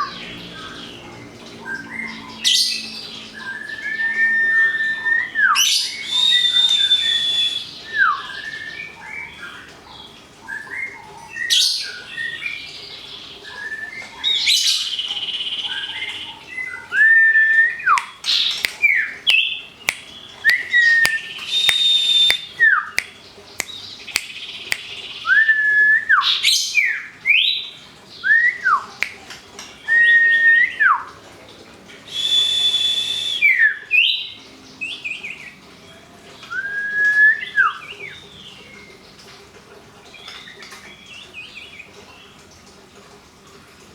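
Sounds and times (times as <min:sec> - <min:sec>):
sliding bird whistles: 0:03.7 - 0:08.8, 0:20.5 - 0:22.8, 0:32.1 - 0:33.7.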